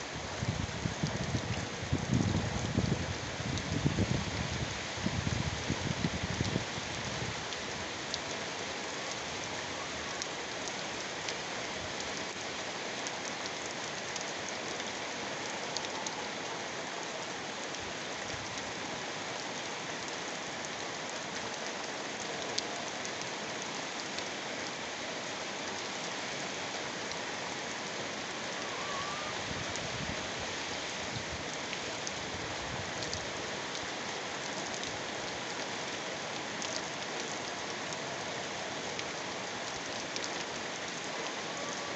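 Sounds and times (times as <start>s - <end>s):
heavy rain falling: 0.0s - 41.9s.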